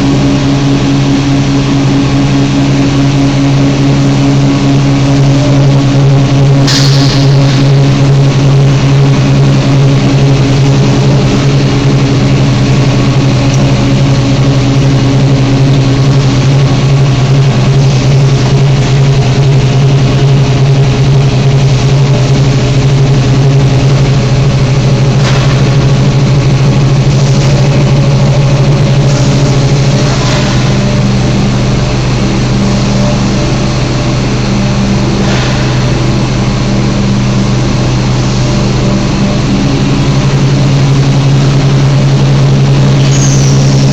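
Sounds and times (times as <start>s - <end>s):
furnace machinery hum: 0.0s - 43.9s
machinery knocks: 25.1s - 27.8s.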